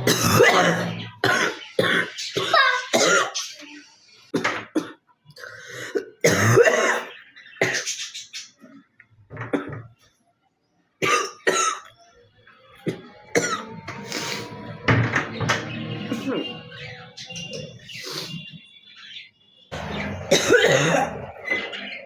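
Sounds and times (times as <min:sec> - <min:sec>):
girl coughing: 0:00.1 - 0:03.4, 0:05.9 - 0:07.8, 0:11.0 - 0:11.9, 0:12.9 - 0:13.6, 0:20.3 - 0:21.2.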